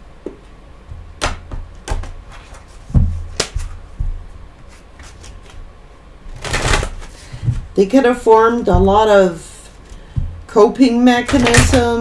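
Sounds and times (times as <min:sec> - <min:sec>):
cards tapping and clicking: 0:01.2 - 0:04.2, 0:11.3 - 0:12.0.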